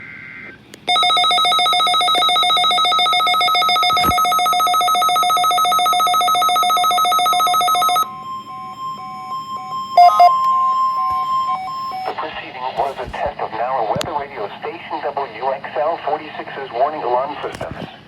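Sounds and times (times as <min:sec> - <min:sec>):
pulsing electronic alarm buzz: 0:00.9 - 0:12.2
short beeps: 0:00.9 - 0:12.2
steady alert tone: 0:00.9 - 0:12.2.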